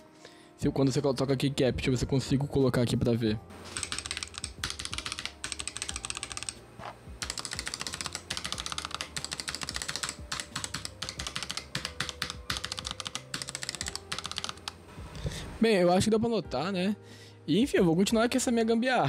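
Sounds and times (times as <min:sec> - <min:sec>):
fast keyboard typing clacks: 0:03.7 - 0:06.6, 0:07.2 - 0:14.8.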